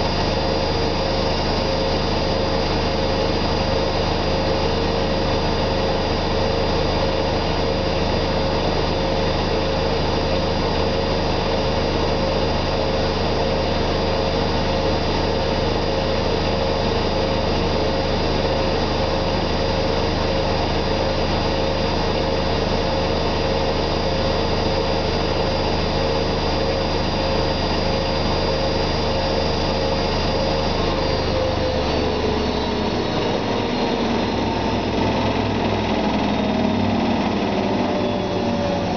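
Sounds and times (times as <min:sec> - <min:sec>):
washing machine spin whine: 0:00.0 - 0:38.9.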